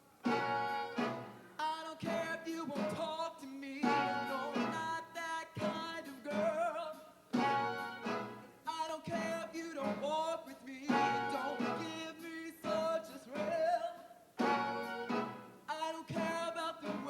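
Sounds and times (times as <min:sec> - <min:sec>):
instrumental accompaniment: 0:00.0 - 0:03.2, 0:03.8 - 0:05.0, 0:07.3 - 0:08.6, 0:10.9 - 0:13.6, 0:14.4 - 0:17.0.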